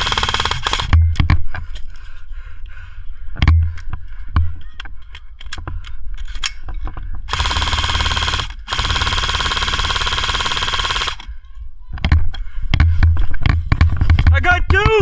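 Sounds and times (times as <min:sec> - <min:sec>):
full-auto airsoft rifle rattle: 0:00.0 - 0:01.3, 0:07.3 - 0:11.4.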